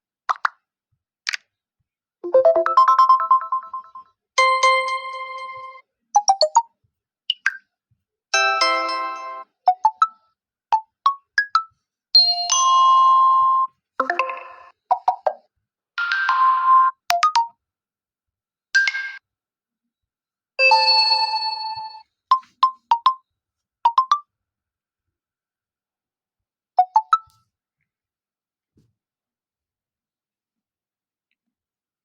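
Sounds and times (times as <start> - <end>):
phone notification tones: 2.3 - 4.0, 14.0 - 15.3, 26.8 - 27.3.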